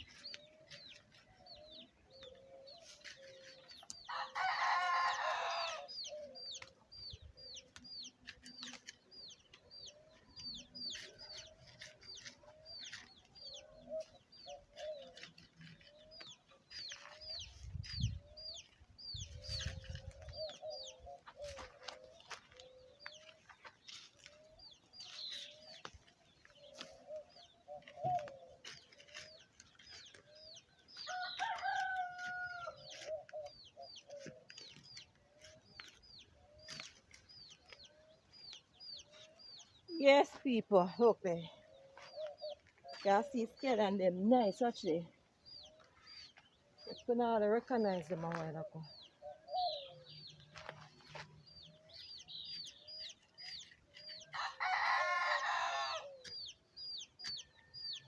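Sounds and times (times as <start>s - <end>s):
chickens clucking: 0.0s - 58.0s
rooster crowing: 4.1s - 5.9s, 31.1s - 32.8s, 54.4s - 56.2s.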